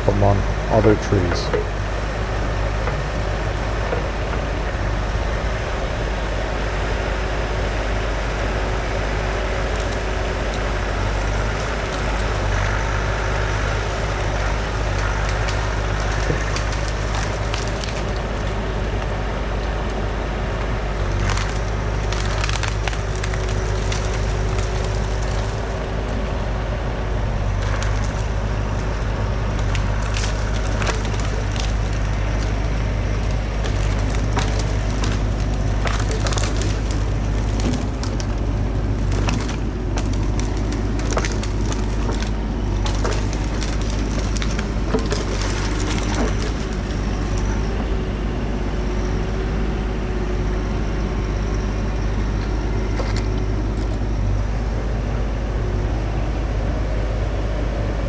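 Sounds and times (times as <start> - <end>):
excavator diesel engine running: 0.0 - 7.6, 18.6 - 58.0
wood cracking and snapping: 14.8 - 18.5, 21.2 - 25.7, 29.5 - 47.6.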